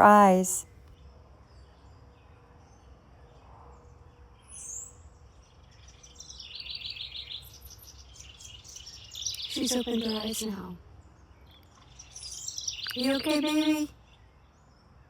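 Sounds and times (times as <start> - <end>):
faint background noise: 0.0 - 15.0
rapid bird chirps: 6.0 - 10.7, 11.8 - 13.9.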